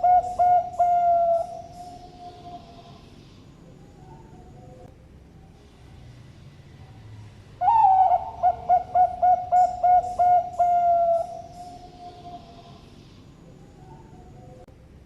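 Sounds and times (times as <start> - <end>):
dove cooing: 0.0 - 3.0, 7.6 - 12.8.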